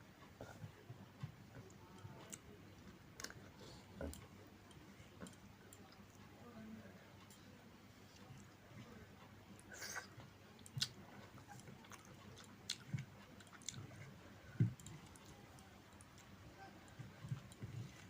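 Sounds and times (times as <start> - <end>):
person chewing food: 1.5 - 6.2, 9.6 - 18.0.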